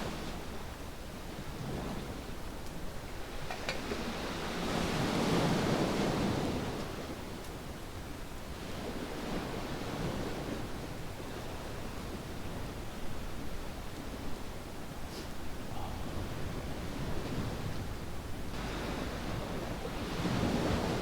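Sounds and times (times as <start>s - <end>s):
waves washing onto sandy beach: 18.5s - 21.0s.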